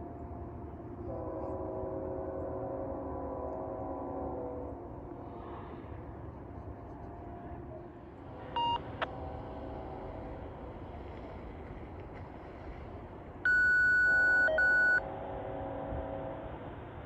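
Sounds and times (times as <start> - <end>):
electronic beeps: 13.5 - 15.0.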